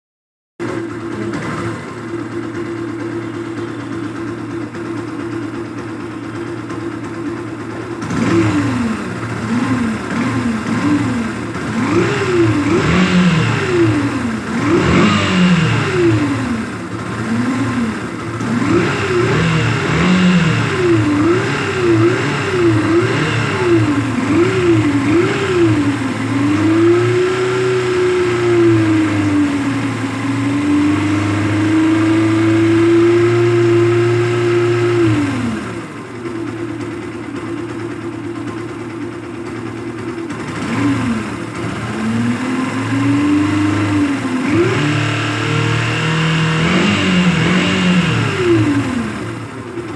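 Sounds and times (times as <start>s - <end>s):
motorcycle engine revving: 0.6s - 49.9s.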